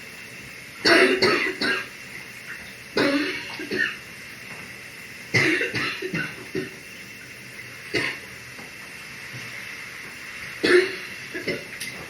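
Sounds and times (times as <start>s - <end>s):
steady hiss: 0.0s - 12.0s
person coughing: 0.8s - 1.9s, 3.0s - 4.0s, 5.4s - 6.8s, 10.6s - 11.7s.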